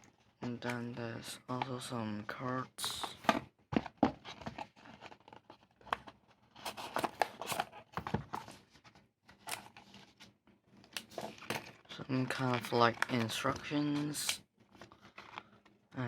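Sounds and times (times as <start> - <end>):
paper and cardboard rustling: 1.7 - 15.8.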